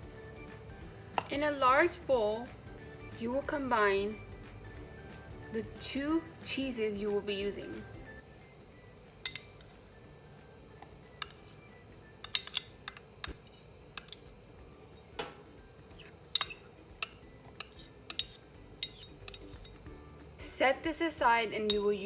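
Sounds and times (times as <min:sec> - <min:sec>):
utensils clinking against bowl: 0:09.2 - 0:10.0, 0:10.8 - 0:20.0, 0:21.6 - 0:22.0.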